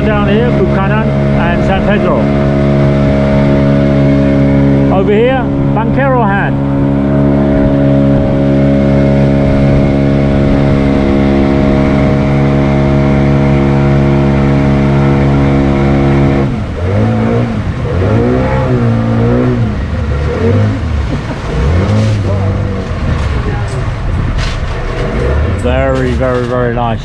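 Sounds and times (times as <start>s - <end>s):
boat engine running and revving: 0.0s - 27.0s.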